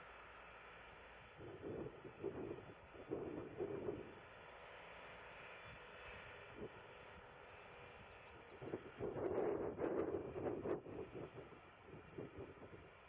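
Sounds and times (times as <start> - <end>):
wind buffeting microphone: 1.4 - 4.2, 8.6 - 13.0.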